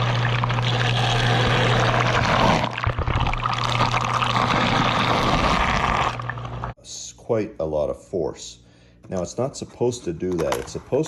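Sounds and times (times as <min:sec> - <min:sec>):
dishwasher pump humming: 0:00.0 - 0:06.8.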